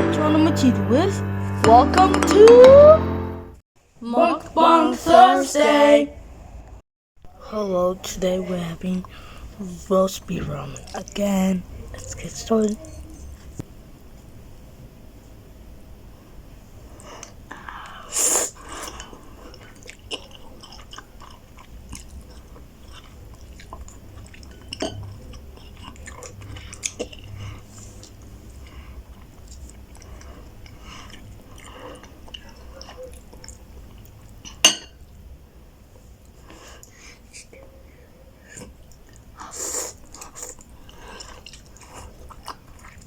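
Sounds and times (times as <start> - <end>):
chewing noodles: 18.5 - 34.6, 38.6 - 43.0.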